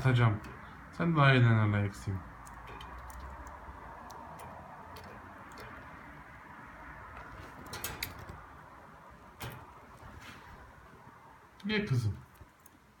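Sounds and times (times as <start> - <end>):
budgie pecking clicks: 2.3 - 6.0.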